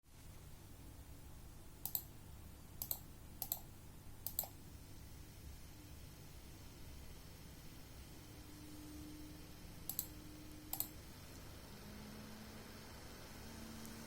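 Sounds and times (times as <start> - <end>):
faint low hum: 0.1 - 14.0
sharp double clicks: 1.8 - 2.1, 2.8 - 4.6, 9.9 - 10.1, 10.7 - 11.0.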